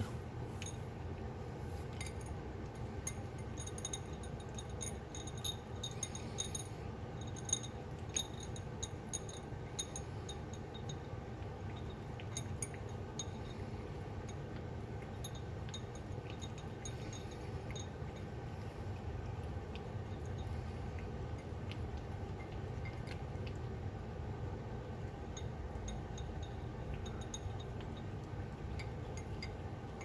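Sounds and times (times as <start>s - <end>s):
steady low hum: 0.0s - 30.0s
kibble clinking against dish: 1.9s - 18.6s, 25.2s - 30.0s.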